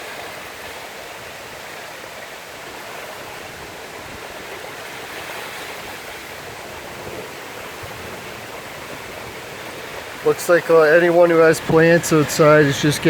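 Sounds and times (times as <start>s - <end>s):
strong storm wind blowing: 2.7s - 13.0s.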